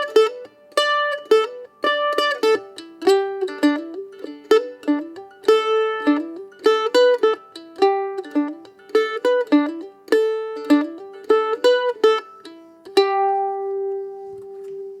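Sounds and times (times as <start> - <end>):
plucked-string tune: 0.0 - 15.0.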